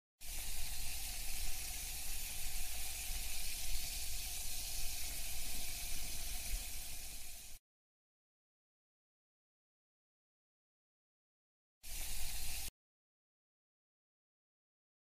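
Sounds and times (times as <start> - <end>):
tap water running: 0.2 - 7.6, 11.9 - 12.7.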